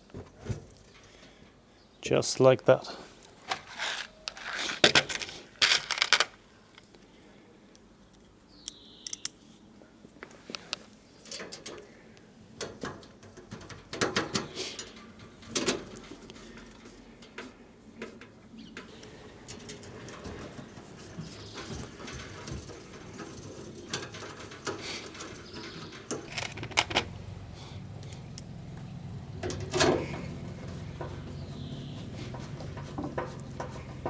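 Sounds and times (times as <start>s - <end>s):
light scraping and rustling: 2.8s - 7.2s, 9.4s - 34.0s
model parts clicking and knocking: 3.5s - 6.4s, 8.6s - 9.4s, 25.4s - 27.1s.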